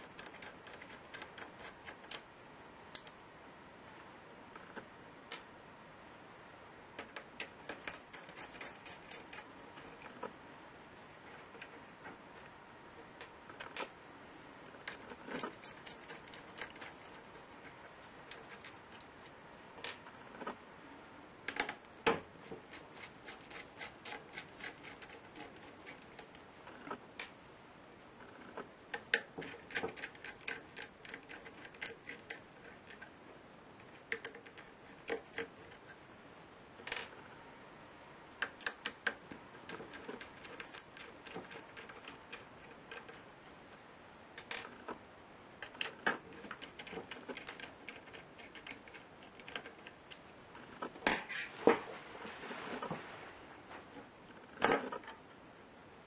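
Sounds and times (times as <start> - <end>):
small clicks and ticks: 38.4 - 43.3.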